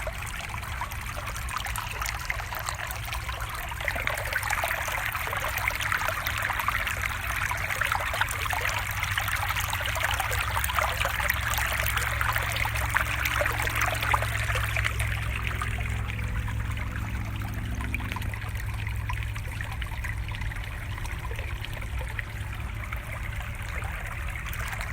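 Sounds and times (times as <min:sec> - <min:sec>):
stream water babbling: 0:00.0 - 0:24.9
low rumble: 0:11.4 - 0:24.9.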